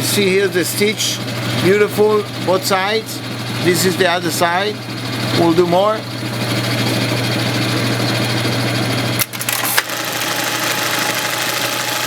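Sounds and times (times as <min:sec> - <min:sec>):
sewing machine humming: 0:01.1 - 0:12.0
sharp machine clack: 0:09.2 - 0:12.0.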